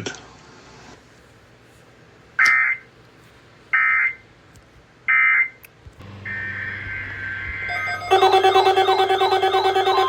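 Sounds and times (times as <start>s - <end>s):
steady tone with low hum: 0.0s - 10.0s
warbling digital squawks: 6.3s - 10.0s.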